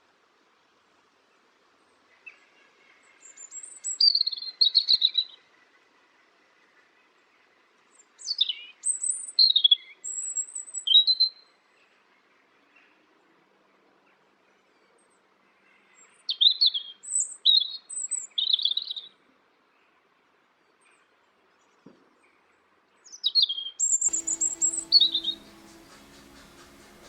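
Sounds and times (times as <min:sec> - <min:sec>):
songbird chirping: 0:23.2 - 0:27.0
soft music: 0:24.1 - 0:27.0.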